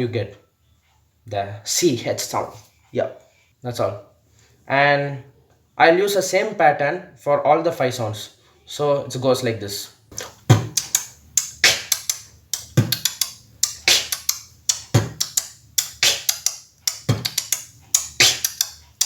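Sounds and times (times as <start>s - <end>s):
beatboxing hi-hat clicks: 10.1s - 19.0s
beatboxing hissy snare: 10.1s - 19.0s
beatboxing kick: 10.1s - 19.0s.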